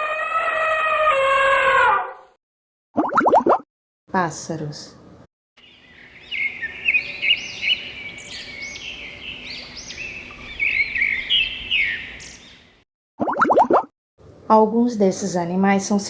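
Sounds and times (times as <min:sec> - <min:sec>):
songbirds chirping and singing: 0:05.6 - 0:12.8.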